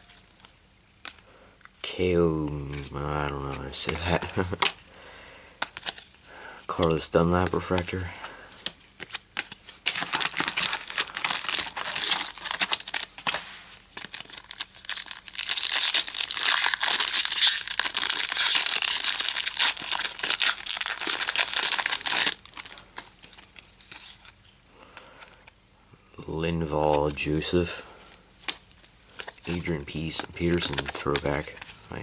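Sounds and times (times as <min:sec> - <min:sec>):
foil wrapper crinkling: 0:02.6 - 0:04.8, 0:06.7 - 0:25.5, 0:28.4 - 0:32.0.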